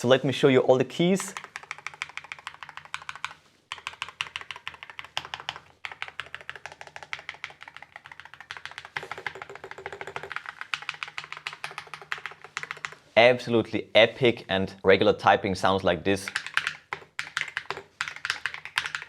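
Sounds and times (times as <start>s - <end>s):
keyboard keys clacking: 1.2s - 13.0s.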